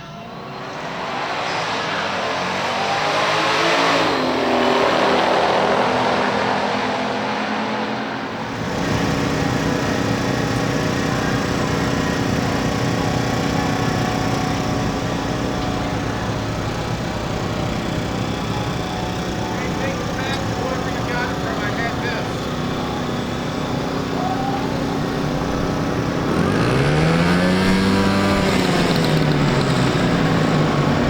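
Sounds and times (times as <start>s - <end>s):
car engine passing at speed: 0.3s - 31.0s
car engine running steadily: 8.3s - 31.0s.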